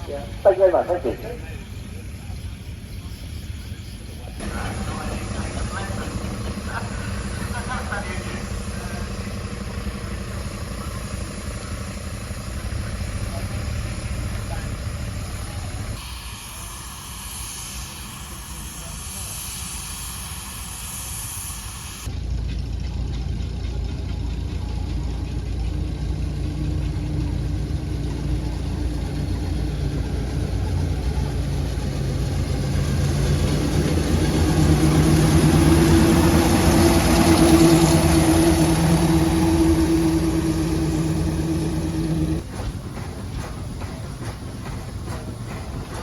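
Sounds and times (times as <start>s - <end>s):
vehicle engine running: 3.8s - 16.0s, 22.0s - 46.0s.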